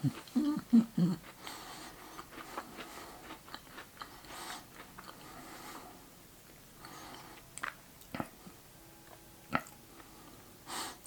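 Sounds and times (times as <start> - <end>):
person chewing crunchy biscuits: 0.0 - 5.9, 6.8 - 8.6
mouth clicks: 7.6 - 8.4, 9.5 - 9.8.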